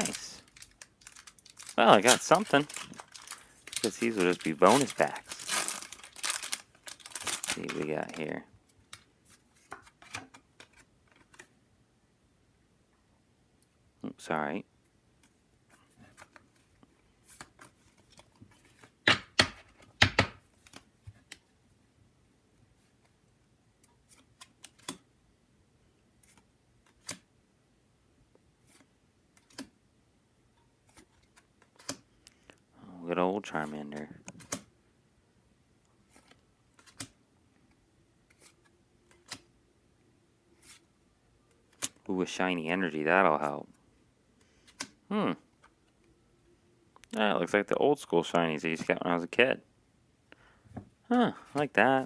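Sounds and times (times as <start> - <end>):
trading cards rustling: 0.0 - 11.5
trading cards clicking and sliding: 38.3 - 39.5.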